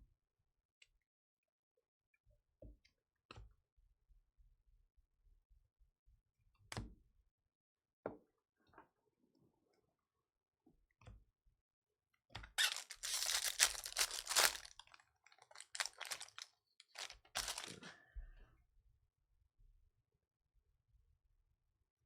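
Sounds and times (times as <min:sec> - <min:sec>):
wrapper tearing and crinkling: 0:12.6 - 0:17.8.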